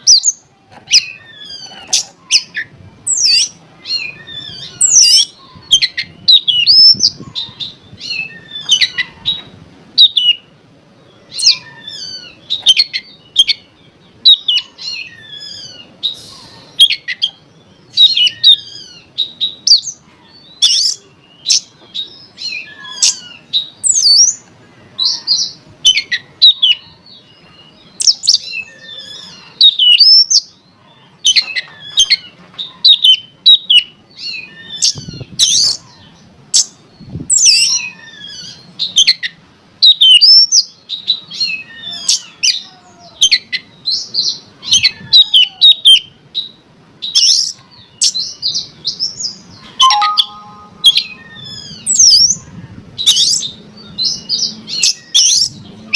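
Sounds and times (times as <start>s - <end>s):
bird singing whistled phrases: 49.8s - 51.4s
harsh bird call: 49.8s - 52.0s.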